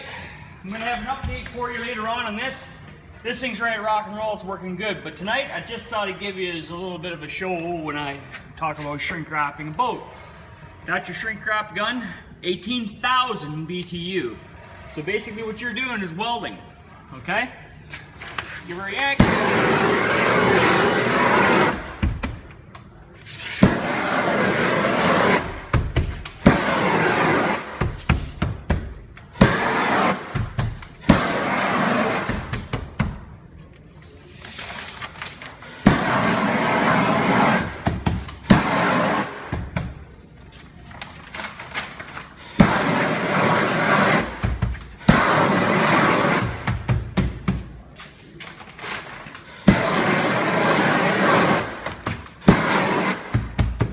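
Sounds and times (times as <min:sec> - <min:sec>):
heat gun flame rushing: 0:19.2 - 0:22.0, 0:23.5 - 0:28.7, 0:29.3 - 0:32.6, 0:35.7 - 0:37.8.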